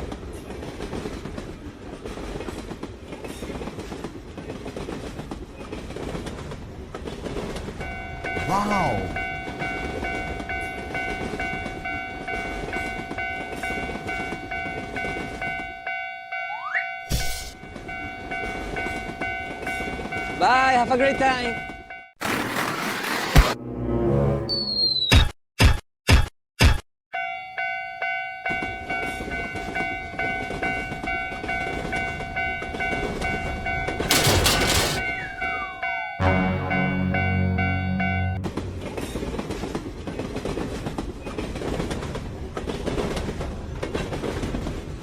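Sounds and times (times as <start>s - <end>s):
passing train: 0.0s - 23.8s, 27.2s - 45.0s
railroad crossing bell ringing: 7.8s - 22.1s, 27.2s - 38.9s.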